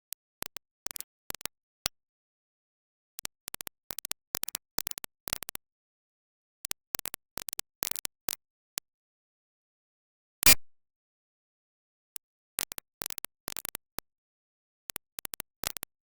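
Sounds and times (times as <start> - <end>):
short sharp clicks: 10.4 - 10.7.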